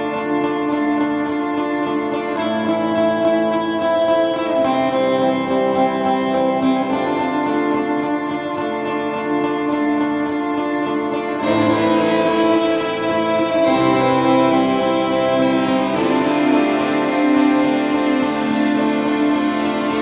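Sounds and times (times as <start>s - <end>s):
guitar music with sustained chords: 0.0s - 20.0s.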